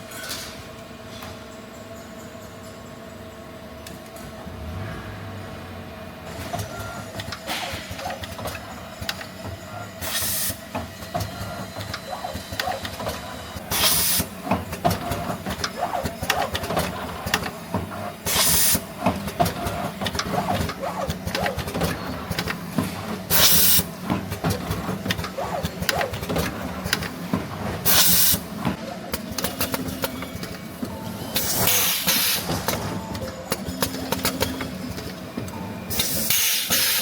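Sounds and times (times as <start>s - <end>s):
machinery clatter with knocks: 6.4s - 9.6s, 19.0s - 31.0s.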